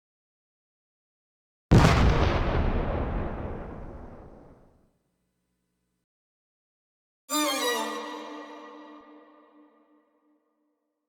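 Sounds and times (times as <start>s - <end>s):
explosion boom with rumble: 1.7s - 4.7s.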